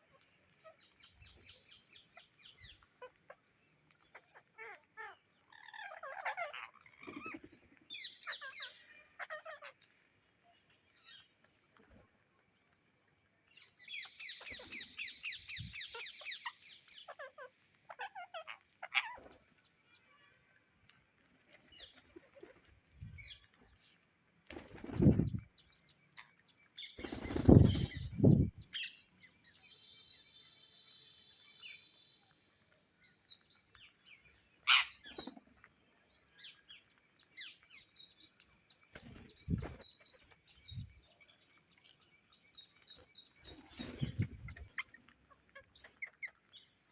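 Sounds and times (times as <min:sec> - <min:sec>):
parrots chirping and calling: 0:00.1 - 0:10.0, 0:13.5 - 0:20.3, 0:33.0 - 0:35.3, 0:42.8 - 0:46.9.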